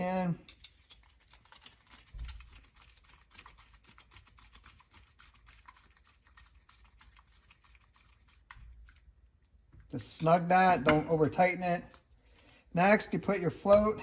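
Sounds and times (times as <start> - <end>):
small metal parts clicking: 0.4 - 7.2.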